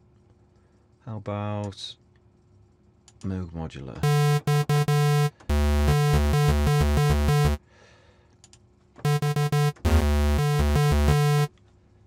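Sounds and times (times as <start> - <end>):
low buzzy square-wave synth notes: 4.0 - 7.6, 9.1 - 11.5.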